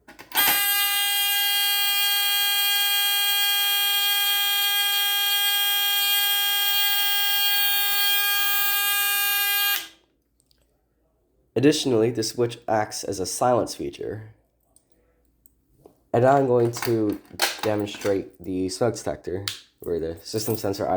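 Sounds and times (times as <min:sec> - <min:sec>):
fire alarm buzzer: 0:00.3 - 0:10.0.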